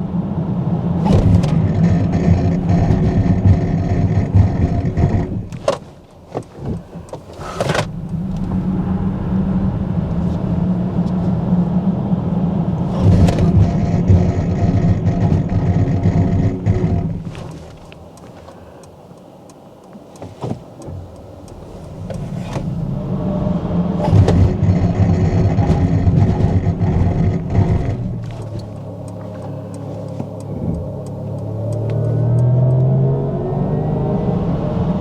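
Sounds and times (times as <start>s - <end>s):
road and tyre rumble: 0.0s - 35.0s
light clicks: 28.3s - 32.9s.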